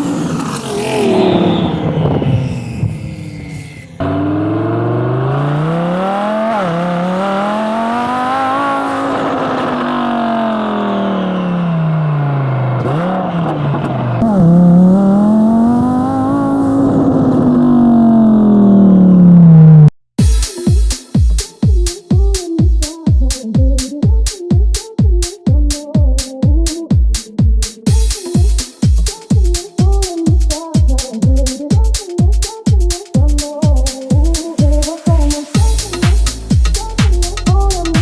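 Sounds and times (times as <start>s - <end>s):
car engine accelerating hard: 0.0s - 19.9s
music with thumping beat: 20.2s - 38.0s.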